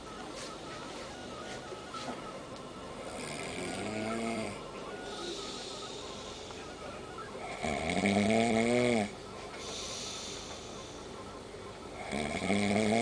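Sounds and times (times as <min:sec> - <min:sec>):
man snoring: 0:03.1 - 0:04.6, 0:07.5 - 0:09.1, 0:12.0 - 0:13.0
breathy out-breath: 0:09.6 - 0:11.1.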